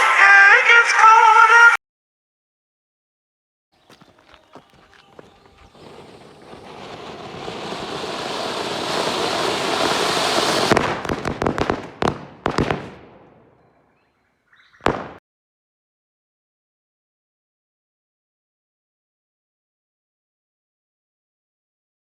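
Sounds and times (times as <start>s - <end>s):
firecrackers banging: 4.0s - 13.6s, 14.8s - 15.2s
firework fountain hissing: 5.0s - 12.1s.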